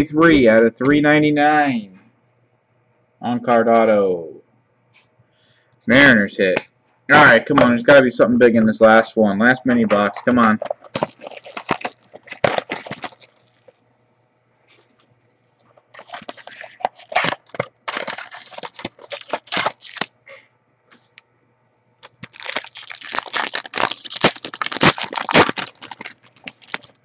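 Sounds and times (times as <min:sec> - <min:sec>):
packaging tearing and crinkling: 0:10.4 - 0:13.8, 0:15.8 - 0:20.1, 0:22.0 - 0:27.0.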